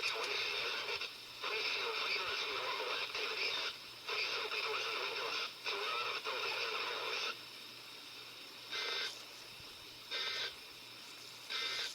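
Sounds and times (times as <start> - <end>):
weather radio broadcast: 0.0 - 7.4, 8.7 - 9.1, 10.1 - 10.5
steady hum and hiss: 0.0 - 11.9
buzzy digital data tone bursts: 10.0 - 10.6, 11.4 - 11.9.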